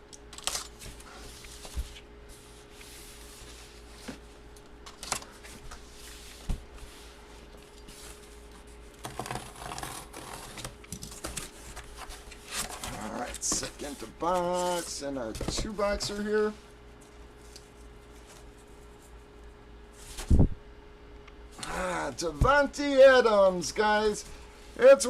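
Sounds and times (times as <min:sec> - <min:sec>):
faint steady hum: 0:00.0 - 0:25.0
packaging rustling and scraping: 0:04.9 - 0:16.6.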